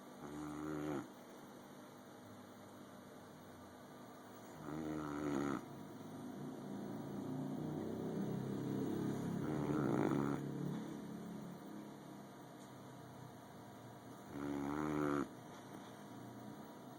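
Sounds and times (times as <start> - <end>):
dog snoring: 0.2 - 1.2, 4.4 - 5.8, 6.7 - 10.9, 14.2 - 15.9.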